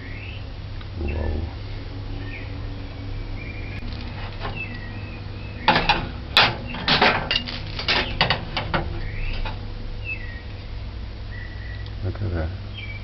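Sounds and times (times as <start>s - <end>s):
birds chirping faintly: 0.0s - 13.0s
sharp knocks and rustles: 3.8s - 4.8s, 5.6s - 9.8s.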